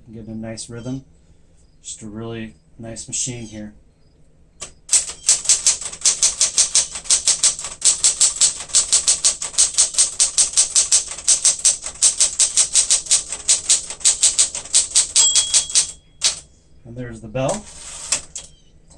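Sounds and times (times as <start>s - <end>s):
manual typewriter typing: 4.6s - 16.5s, 17.5s - 18.6s.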